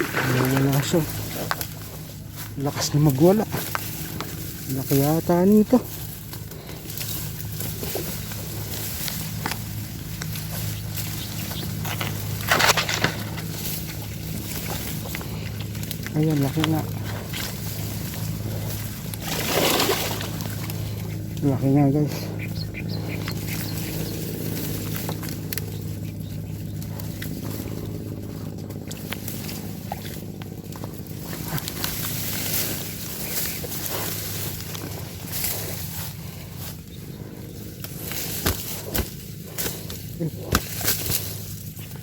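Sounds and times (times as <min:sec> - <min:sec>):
low motor hum: 0:00.0 - 0:42.0
fish splashing in water: 0:19.2 - 0:21.0.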